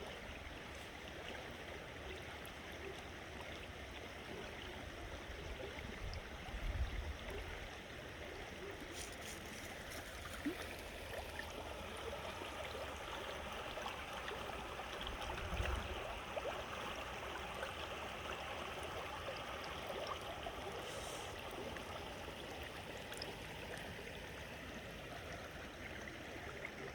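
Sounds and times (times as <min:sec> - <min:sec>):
creek water rushing: 0:07.9 - 0:26.9.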